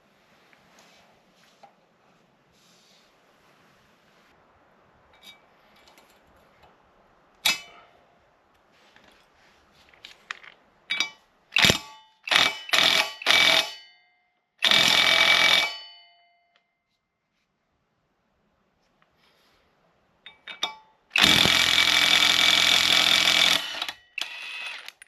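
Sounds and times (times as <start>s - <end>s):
sharp metallic clank: 7.4s - 7.8s, 10.9s - 14.0s
metal ringing: 7.4s - 8.0s, 10.9s - 14.1s, 15.1s - 16.5s, 20.2s - 21.0s.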